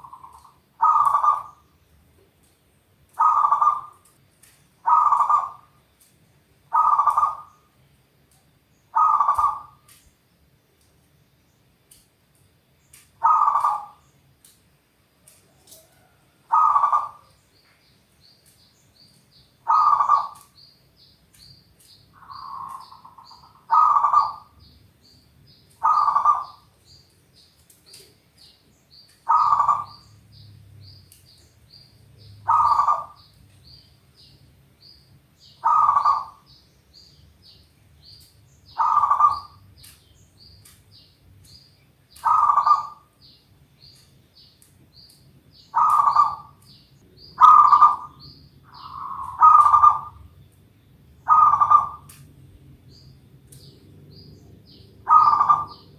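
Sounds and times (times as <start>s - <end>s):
dove cooing: 0.0s - 1.6s, 3.1s - 4.1s, 4.8s - 5.8s, 6.7s - 7.6s, 8.9s - 10.0s, 13.2s - 14.0s, 15.4s - 17.4s, 19.6s - 20.5s, 22.2s - 24.6s, 25.8s - 26.7s, 29.2s - 30.1s, 32.4s - 33.3s, 35.5s - 36.5s, 38.7s - 39.9s, 42.2s - 43.1s, 45.7s - 50.4s, 51.2s - 52.2s, 55.0s - 55.9s.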